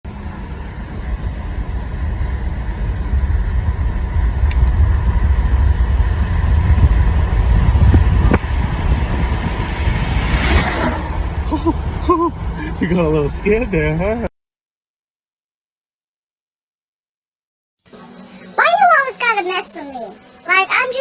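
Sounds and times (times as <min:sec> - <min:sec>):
engine rumble: 0:00.0 - 0:14.3.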